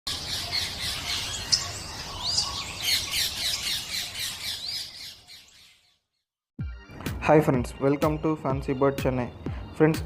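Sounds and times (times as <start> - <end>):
small birds chattering and squawking: 0.1 - 6.1.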